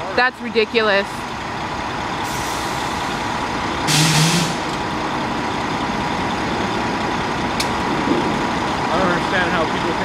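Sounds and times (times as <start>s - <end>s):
diesel engine idling: 0.0s - 10.0s
air brake hiss: 3.9s - 4.7s.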